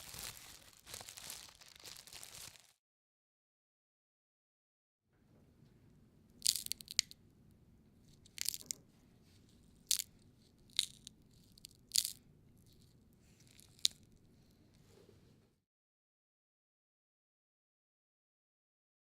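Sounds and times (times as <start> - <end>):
crisp crunches: 0.0 - 2.8, 8.3 - 8.8, 9.8 - 10.1, 10.7 - 14.1.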